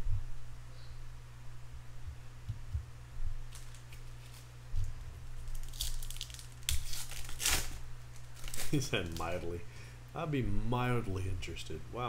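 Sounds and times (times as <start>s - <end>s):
steady low hum: 0.0s - 12.0s
wrapper crinkling: 3.5s - 4.6s, 5.3s - 9.5s.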